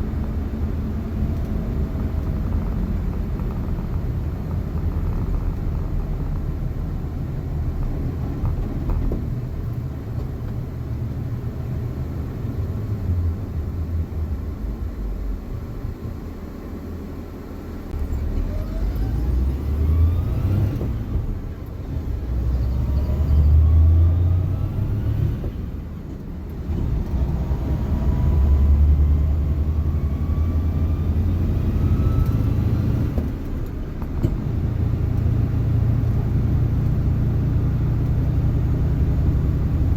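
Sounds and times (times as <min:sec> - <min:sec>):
vehicle drivetrain rumble: 0:00.0 - 0:39.9
rising drivetrain whine: 0:17.9 - 0:39.9.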